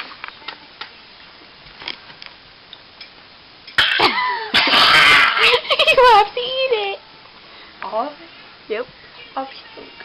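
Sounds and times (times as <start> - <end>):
loud vocal outburst: 3.8 - 5.6.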